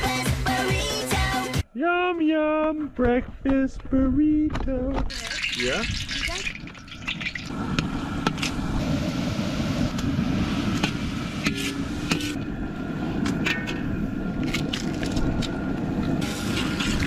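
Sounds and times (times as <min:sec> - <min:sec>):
campfire crackling: 0:05.1 - 0:17.0
low rumble: 0:07.4 - 0:17.0
fire pops and snaps: 0:14.4 - 0:17.0.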